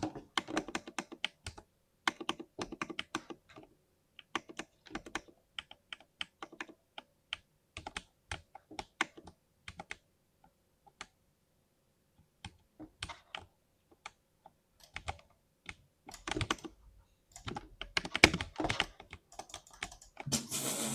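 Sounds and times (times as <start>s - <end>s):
keyboard keystrokes: 14.8s - 16.7s, 17.3s - 20.8s.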